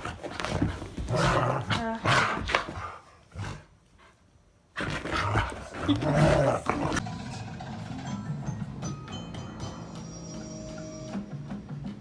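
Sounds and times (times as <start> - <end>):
dogs growling and scuffling: 0.0 - 7.0.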